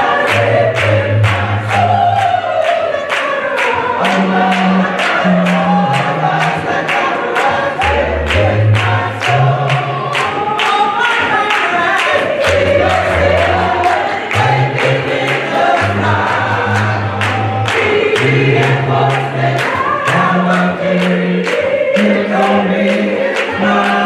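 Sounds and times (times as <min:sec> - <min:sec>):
gospel choir singing: 0:00.0 - 0:24.0
bass line: 0:07.9 - 0:10.2, 0:12.4 - 0:21.0.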